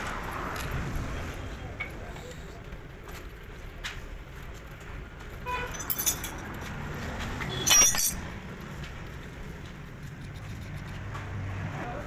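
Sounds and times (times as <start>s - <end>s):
metal parts clinking: 5.6s - 6.6s, 7.5s - 8.4s.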